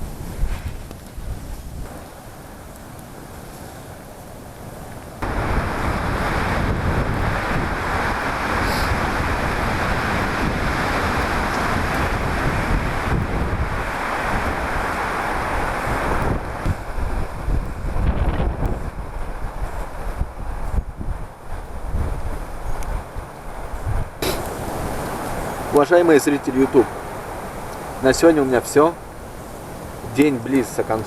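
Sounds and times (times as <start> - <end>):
wind buffeting microphone: 0.0 - 4.0, 5.0 - 31.0.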